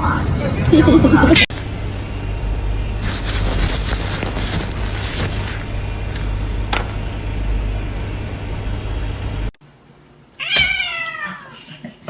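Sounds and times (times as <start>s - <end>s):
cat meowing: 10.4s - 11.5s.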